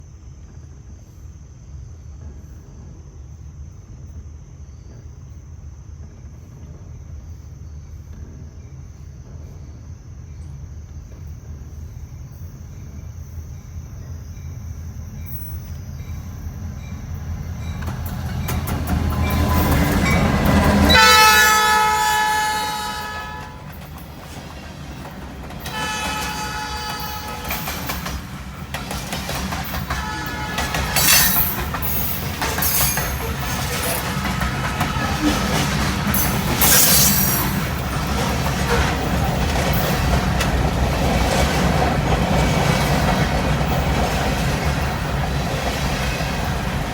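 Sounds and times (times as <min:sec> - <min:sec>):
train rumble: 0:00.0 - 0:46.9
high insect tone: 0:06.9 - 0:20.9
locomotive horn: 0:19.2 - 0:23.9, 0:25.6 - 0:28.3, 0:29.6 - 0:38.0.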